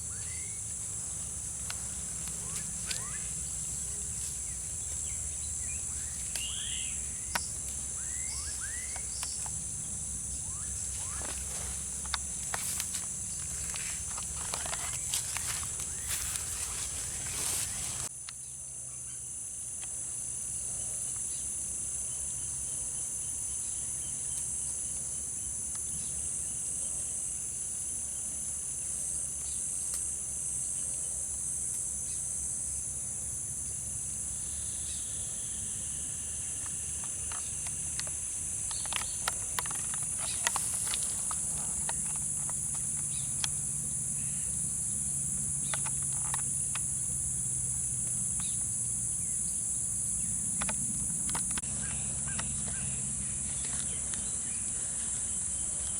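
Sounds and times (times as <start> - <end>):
high-pitched insect chorus: 0.0 - 55.9
sharp clicks and rustles: 10.8 - 18.1, 36.6 - 43.6, 45.6 - 47.0, 50.5 - 51.6.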